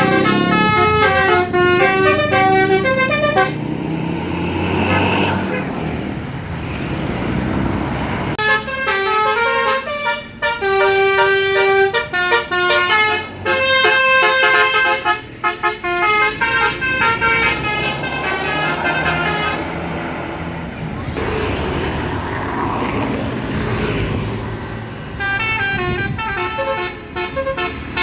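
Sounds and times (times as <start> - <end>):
bus musical horn playing tune: 0.0 - 3.6, 4.8 - 5.8, 8.4 - 19.8, 25.2 - 28.0
road noise: 0.0 - 28.0.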